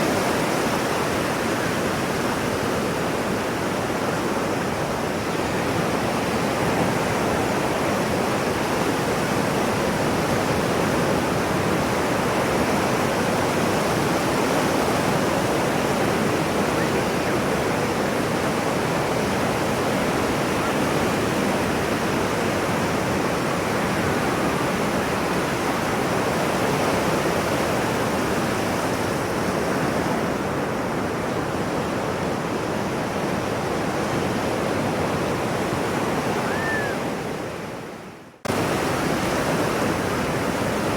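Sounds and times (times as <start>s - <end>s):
ocean surf rushing: 38.5s - 40.9s.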